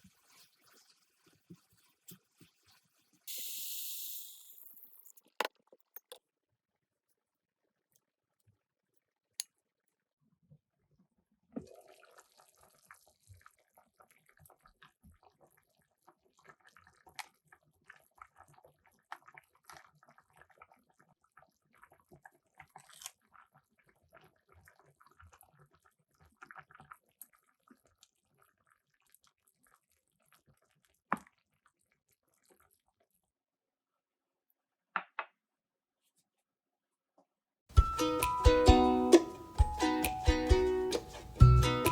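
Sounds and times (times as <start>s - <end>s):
soft liquid sounds: 0.0s - 5.8s, 11.5s - 33.2s.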